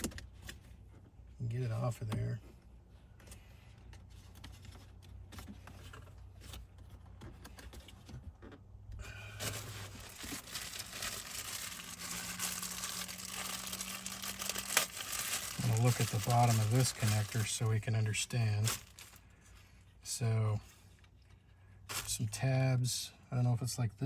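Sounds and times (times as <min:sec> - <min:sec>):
rustling and crinkling: 0:02.2 - 0:20.0.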